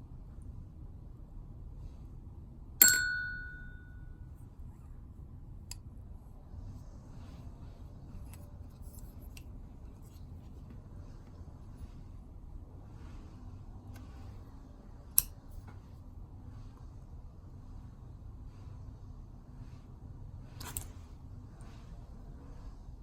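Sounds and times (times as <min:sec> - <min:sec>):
metal part clinking and ringing: 0:02.8 - 0:04.0
light handling noise: 0:07.2 - 0:12.1.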